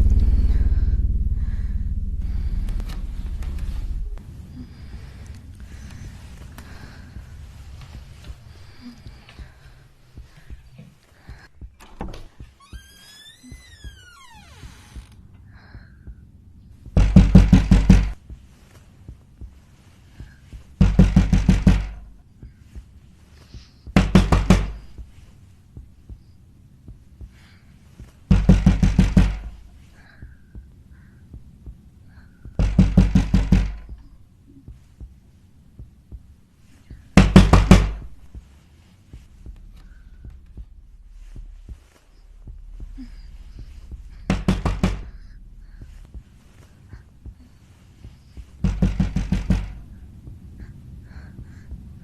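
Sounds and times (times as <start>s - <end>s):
faint low hum: 0.0s - 52.0s
heavy rapid knocking: 15.5s - 18.4s, 20.2s - 22.1s, 28.0s - 30.7s, 32.4s - 34.1s, 39.1s - 50.6s.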